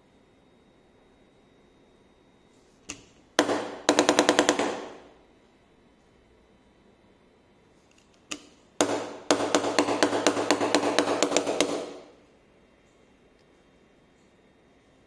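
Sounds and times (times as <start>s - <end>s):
rapid sharp knocks: 3.4s - 5.0s, 8.8s - 12.1s.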